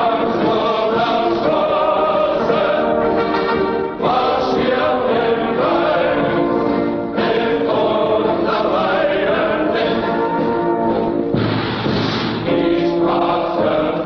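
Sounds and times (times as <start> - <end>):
choir singing an anthem: 0.0 - 10.6, 12.4 - 14.0.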